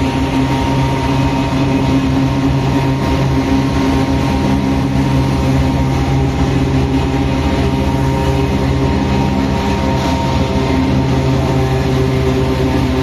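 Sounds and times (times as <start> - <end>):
locomotive engine drone: 0.0 - 13.0
thin steady whine: 0.0 - 13.0.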